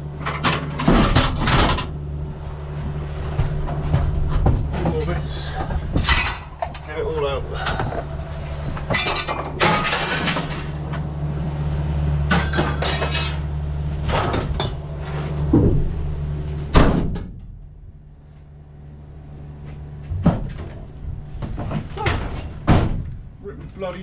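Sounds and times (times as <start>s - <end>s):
vehicle engine idling: 0.0s - 24.0s
scrap metal clinking and clanking: 3.4s - 11.1s, 12.3s - 15.2s
loud knock: 16.7s - 17.4s.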